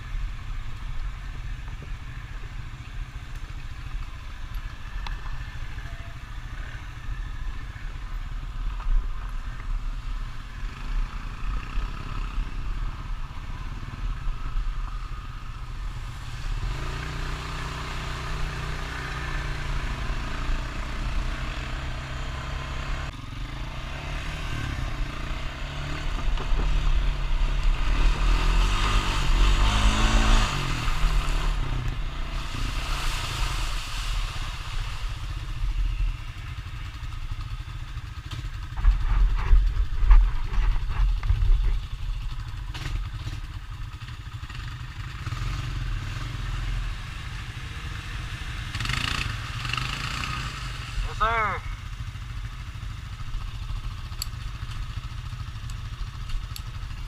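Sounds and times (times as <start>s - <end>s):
atv engine revving: 1.4s - 57.0s
rushing hiss: 32.2s - 35.7s.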